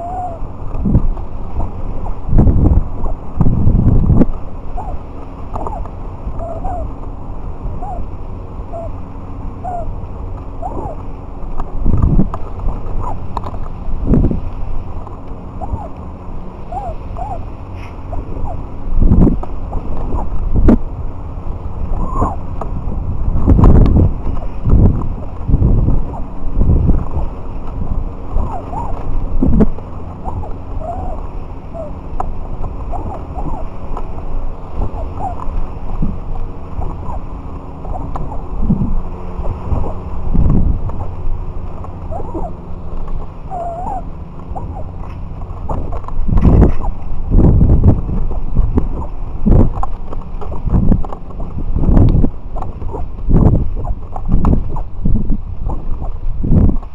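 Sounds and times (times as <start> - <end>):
short chirping calls: 0.0 - 0.5, 4.7 - 7.0, 7.7 - 9.0, 9.6 - 10.0, 10.6 - 11.1, 15.5 - 16.0, 16.6 - 18.7, 28.4 - 29.6, 30.2 - 32.0, 32.9 - 33.8, 34.7 - 36.1, 42.1 - 42.6, 43.5 - 45.0
wind rumbling on microphone: 0.0 - 56.9.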